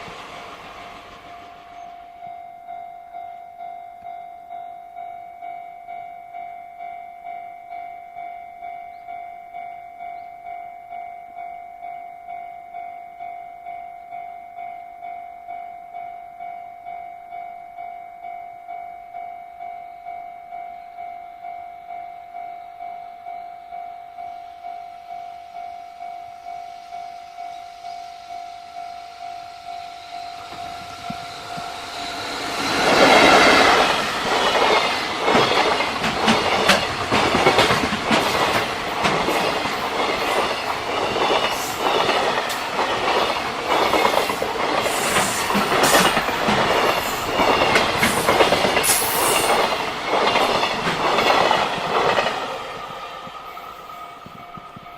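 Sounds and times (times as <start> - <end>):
level crossing warning bell: 1.7 - 54.9
train wheels clattering over rails: 30.4 - 54.9.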